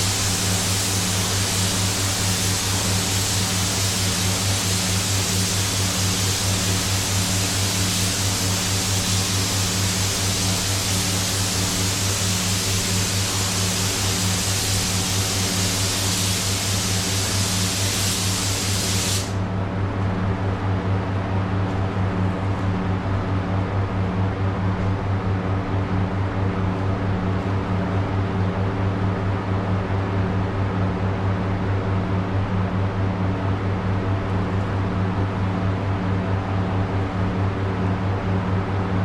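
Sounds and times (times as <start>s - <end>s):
spray gun hiss: 0.0s - 19.4s.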